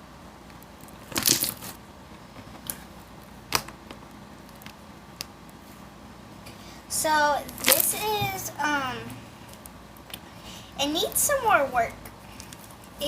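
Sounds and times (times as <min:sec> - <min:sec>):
slime crackling: 0:00.8 - 0:01.8, 0:07.0 - 0:08.8
slime clicking: 0:07.5 - 0:07.9.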